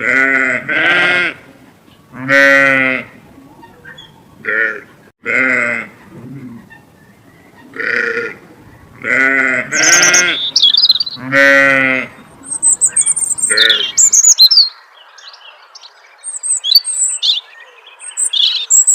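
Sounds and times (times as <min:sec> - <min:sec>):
goats bleating: 0:00.0 - 0:01.4, 0:04.4 - 0:06.6, 0:07.7 - 0:08.4, 0:09.0 - 0:12.2
small birds chirping: 0:03.3 - 0:05.1, 0:06.0 - 0:18.9.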